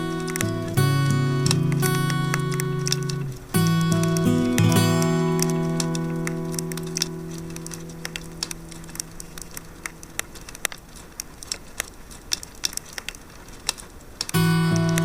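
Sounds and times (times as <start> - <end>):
acoustic guitar chord: 0.0 - 7.8
campfire crackling and popping: 0.0 - 15.0.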